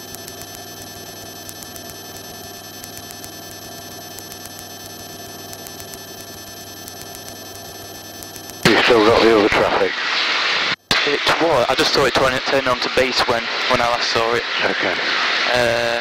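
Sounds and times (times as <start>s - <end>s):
electronic interference buzzing hum: 0.0s - 16.0s.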